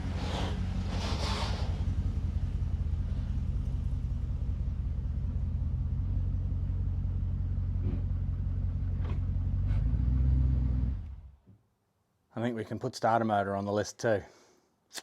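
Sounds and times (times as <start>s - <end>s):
car engine idling: 0.0s - 9.6s.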